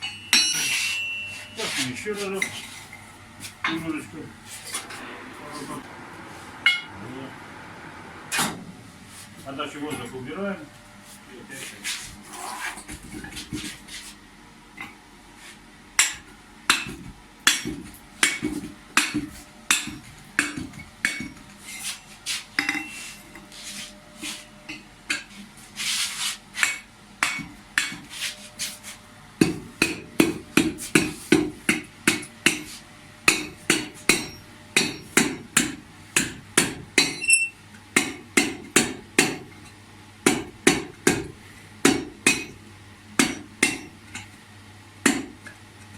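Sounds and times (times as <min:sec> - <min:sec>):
hammer striking steel pipe: 0:33.3 - 0:37.2, 0:41.9 - 0:42.6, 0:43.2 - 0:43.9.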